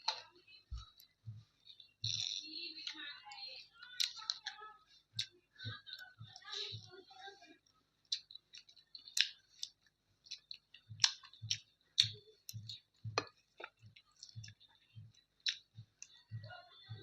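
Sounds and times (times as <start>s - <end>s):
person chewing food: 0.0s - 3.2s, 3.9s - 6.9s, 7.6s - 16.5s
wet clicking mouth sounds: 1.0s - 3.0s, 5.2s - 6.8s, 8.1s - 16.2s.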